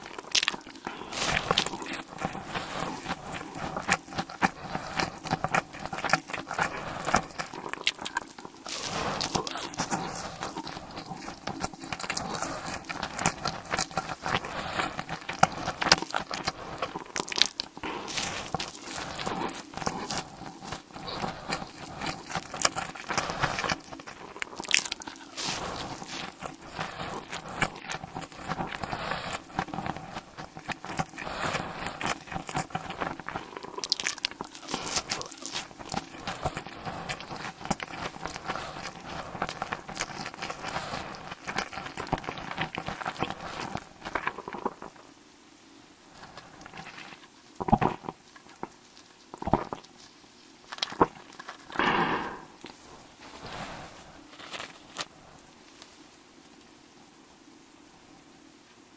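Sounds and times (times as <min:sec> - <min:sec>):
crunching and chewing: 0:00.0 - 0:45.1, 0:46.0 - 0:56.8
mouth sounds: 0:50.8 - 0:53.2.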